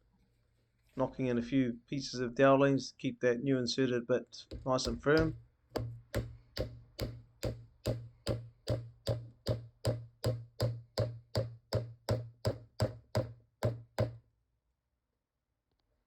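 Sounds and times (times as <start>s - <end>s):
hammer tapping wooden dowels: 4.5s - 14.2s.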